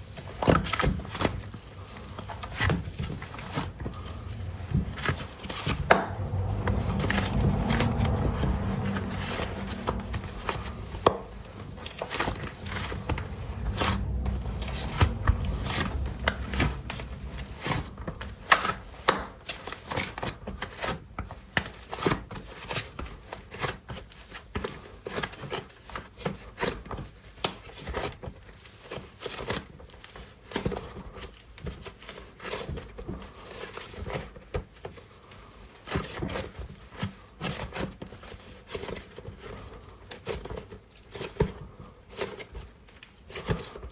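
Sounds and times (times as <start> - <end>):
low rumbling: 1.6 - 19.1.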